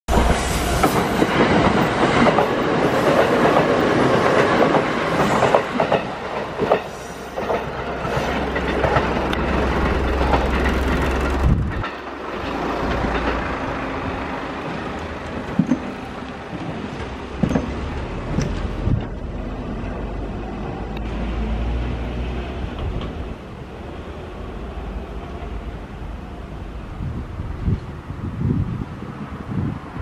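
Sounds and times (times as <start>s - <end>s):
electric train passing: 0.1s - 30.0s
wheels clicking over rail joints: 0.2s - 20.1s.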